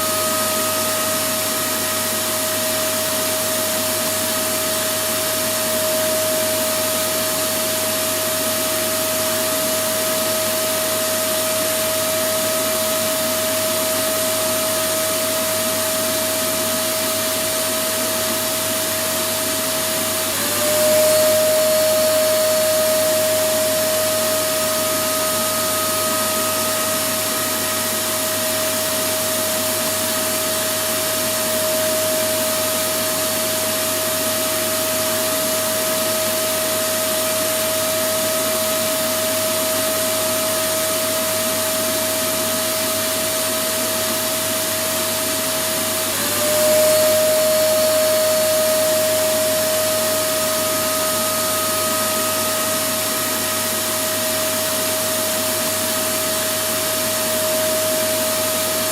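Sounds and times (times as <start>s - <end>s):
vacuum cleaner running: 0.0s - 58.9s.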